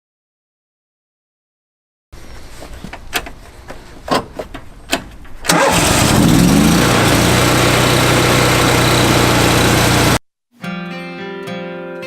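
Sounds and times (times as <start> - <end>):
engine starting and running: 5.4 - 10.2.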